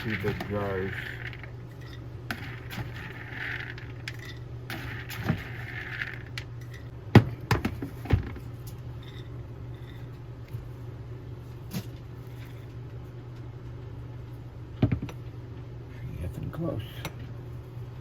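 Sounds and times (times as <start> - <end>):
popcorn kernels poured into jars: 0.0 - 1.4, 2.3 - 6.4.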